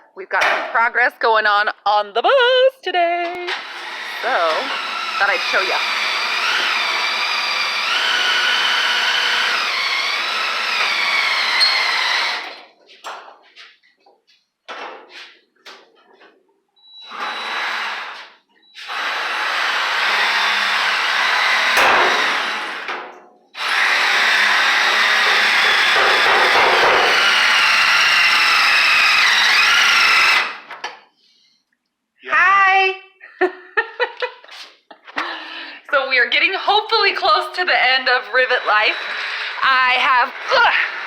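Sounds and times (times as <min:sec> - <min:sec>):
power drill whining: 0:03.4 - 0:12.7, 0:16.8 - 0:22.9, 0:23.6 - 0:30.8, 0:36.6 - 0:41.0.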